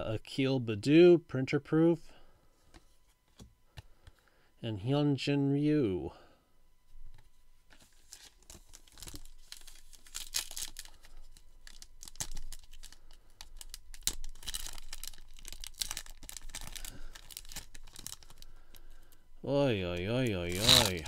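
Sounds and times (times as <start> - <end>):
wrapper crinkling and tearing: 7.8 - 19.1, 19.9 - 21.0.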